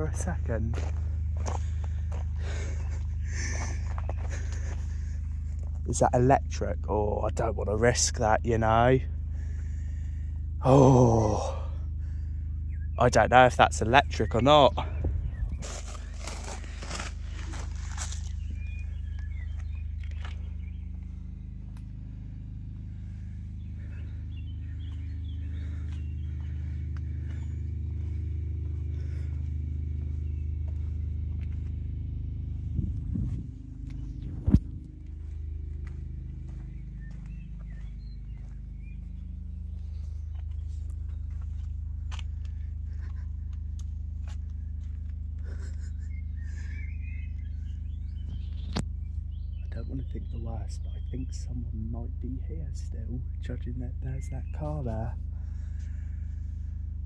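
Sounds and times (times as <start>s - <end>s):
engine humming steadily: 0.0s - 57.0s
faint bird chirps: 12.2s - 13.3s, 17.4s - 31.3s, 32.7s - 56.1s.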